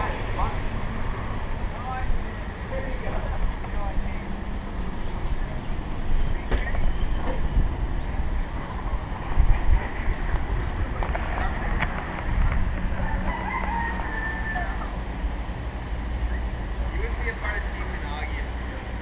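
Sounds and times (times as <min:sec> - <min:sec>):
rooster crowing: 0:12.9 - 0:15.1.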